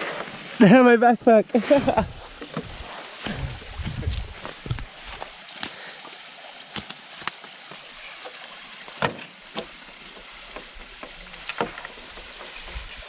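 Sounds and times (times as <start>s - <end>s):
people moving through brush: 0.0s - 9.0s
outdoor hiss: 0.0s - 13.0s.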